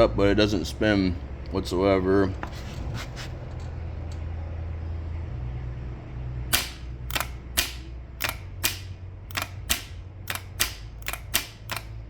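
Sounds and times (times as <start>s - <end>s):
steady low hum: 0.0s - 12.0s
starter motor clicking: 6.5s - 12.0s.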